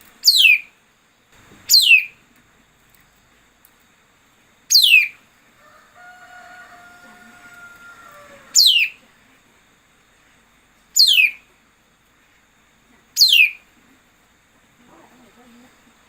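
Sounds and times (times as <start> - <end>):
drawn-out lower bird call: 4.7 - 9.0.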